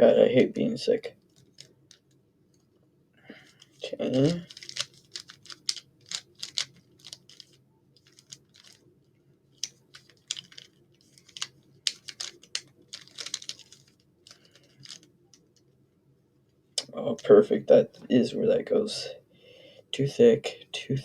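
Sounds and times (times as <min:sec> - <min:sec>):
puzzle cube plastic clicks: 0:03.5 - 0:08.8, 0:09.6 - 0:15.6.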